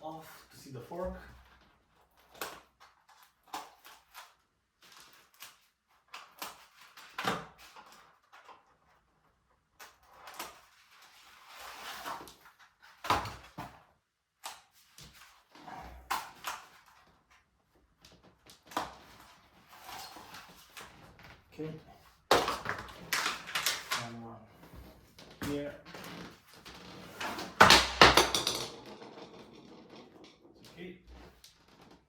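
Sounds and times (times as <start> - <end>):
packing material rustling: 22.6 - 24.1.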